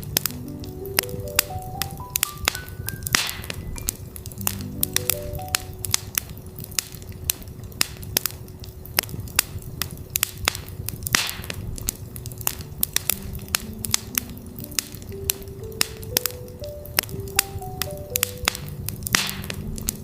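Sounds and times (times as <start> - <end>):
campfire crackling and popping: 0.0 - 20.0.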